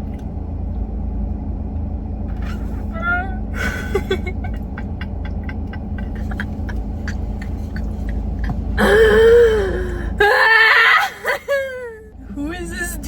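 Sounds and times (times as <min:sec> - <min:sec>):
low engine and road rumble: 0:00.0 - 0:13.0
person moaning: 0:08.8 - 0:12.1.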